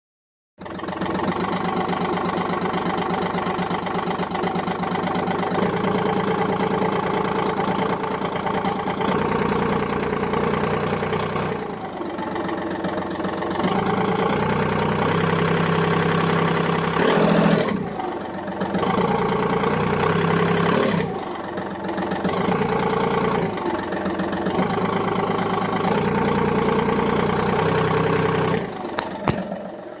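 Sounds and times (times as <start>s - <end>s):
diesel engine revving: 0.8s - 30.0s
turbocharger whistle: 5.6s - 8.1s.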